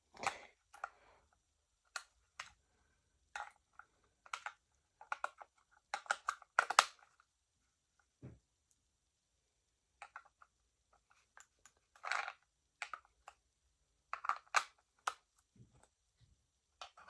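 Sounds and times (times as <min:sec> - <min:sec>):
plastic clicks and clacks: 0:03.4 - 0:07.2, 0:14.2 - 0:15.2.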